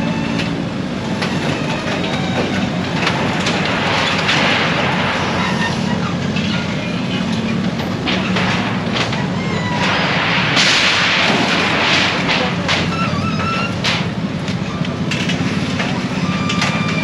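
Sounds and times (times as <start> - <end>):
machinery engine running: 0.0 - 17.0
rubble scraping and falling: 1.2 - 14.2
clatter and knocks: 1.2 - 17.0.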